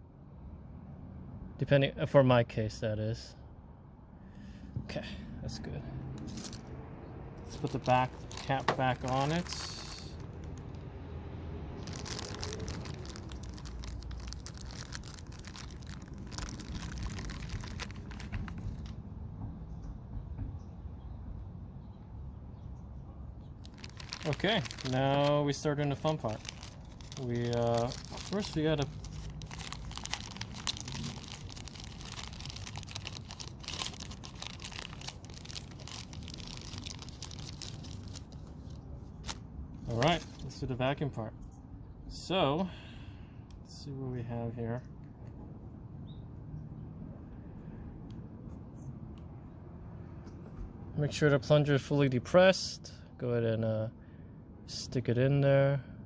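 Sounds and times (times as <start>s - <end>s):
plastic crinkling and clicking: 11.8s - 19.0s, 23.6s - 40.4s.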